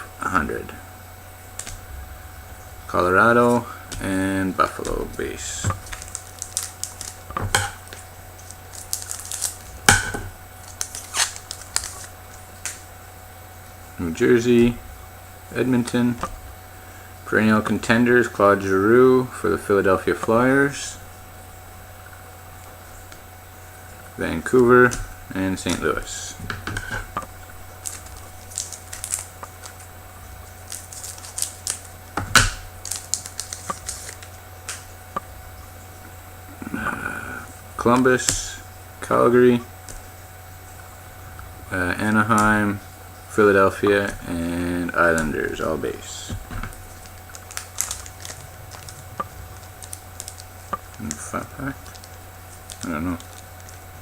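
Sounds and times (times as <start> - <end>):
cards sliding and flicking: 1.5 - 2.0, 2.9 - 13.0, 24.3 - 35.3.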